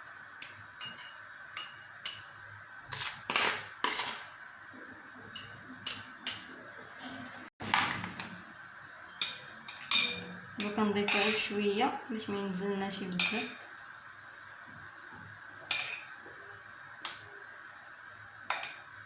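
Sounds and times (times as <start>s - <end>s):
metal spoon clinking on glass: 9.2s - 11.4s, 13.2s - 13.6s, 15.7s - 16.1s.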